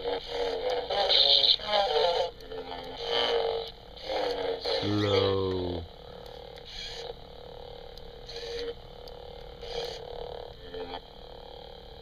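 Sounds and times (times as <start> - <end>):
tinny electronic toy voice: 0.1 - 5.8.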